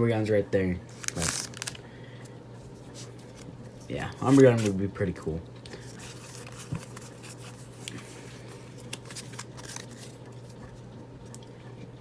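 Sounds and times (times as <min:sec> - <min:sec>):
steady low hum: 0:00.0 - 0:12.0
trading cards clicking and rustling: 0:00.9 - 0:01.8, 0:02.9 - 0:04.8, 0:05.7 - 0:10.8.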